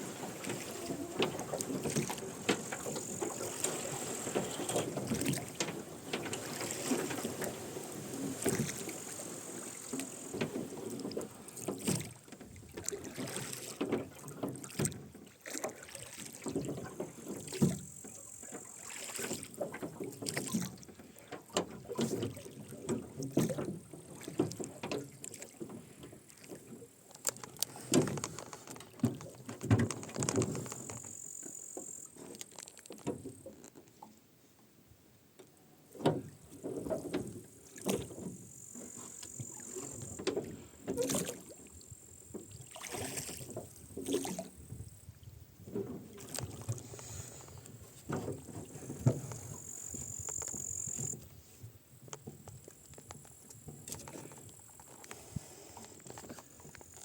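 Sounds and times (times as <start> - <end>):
oars splashing in water: 0.0 - 34.2, 35.6 - 45.0, 45.6 - 57.0
oarlocks creaking and knocking: 0.1 - 7.6, 19.6 - 34.0, 45.7 - 51.3.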